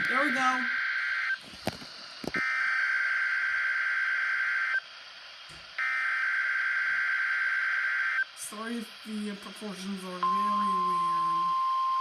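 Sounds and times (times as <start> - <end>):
buzzy data tone burst: 0.0 - 4.9, 5.8 - 11.7.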